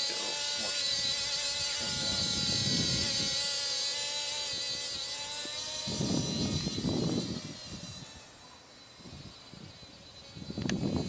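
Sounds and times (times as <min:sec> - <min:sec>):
micro quadcopter motors whining: 0:00.0 - 0:11.0
wind gusts on microphone: 0:00.8 - 0:03.6, 0:04.4 - 0:08.3, 0:09.0 - 0:11.0.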